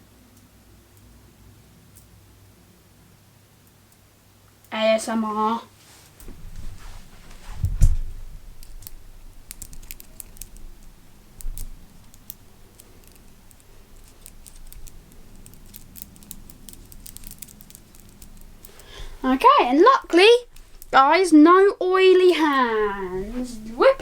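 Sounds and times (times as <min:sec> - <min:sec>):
heavy thump: 0:07.4 - 0:08.3.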